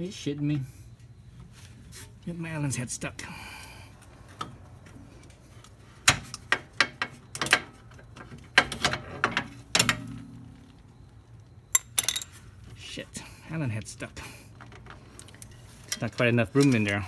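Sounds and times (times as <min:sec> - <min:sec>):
hand tools clanking on metal: 0:06.1 - 0:10.8, 0:11.8 - 0:12.4, 0:14.7 - 0:17.0.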